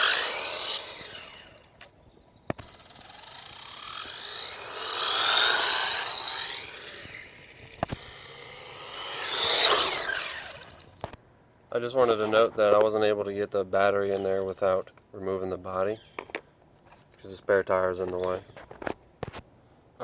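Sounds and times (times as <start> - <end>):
toy truck electric motor whining: 0.0 - 1.8, 2.5 - 11.1.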